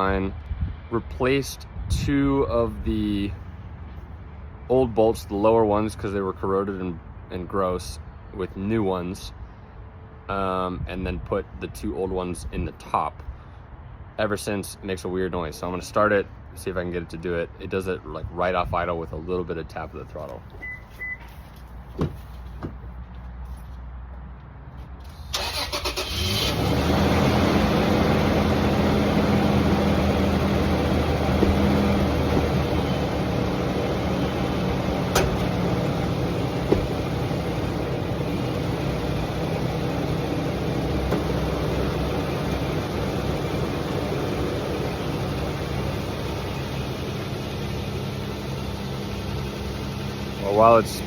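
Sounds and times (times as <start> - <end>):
truck engine idling: 25.4 - 51.0.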